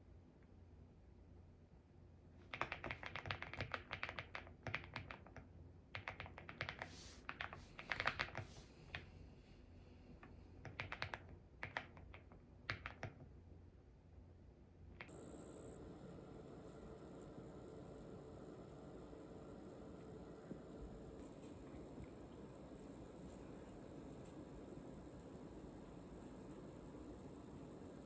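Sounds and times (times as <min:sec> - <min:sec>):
typing on mechanical keyboard: 0:02.4 - 0:09.1, 0:10.6 - 0:13.3.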